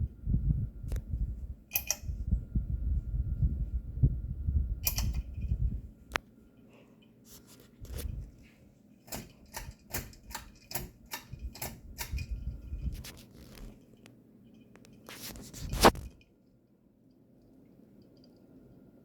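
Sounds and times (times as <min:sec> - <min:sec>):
sharp clicks and light knocks: 0:01.7 - 0:02.1, 0:04.8 - 0:05.3, 0:09.1 - 0:12.4.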